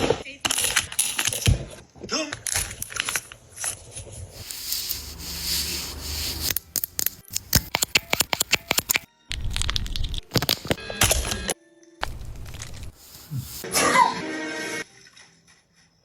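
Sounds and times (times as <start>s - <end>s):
hiss of rubbing or spraying: 4.3s - 9.0s, 12.9s - 13.7s.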